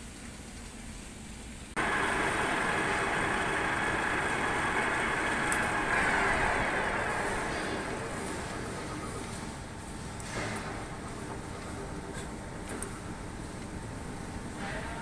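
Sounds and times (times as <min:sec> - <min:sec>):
machine background noise: 0:01.6 - 0:15.0
metal lathe grating hiss: 0:01.8 - 0:09.2.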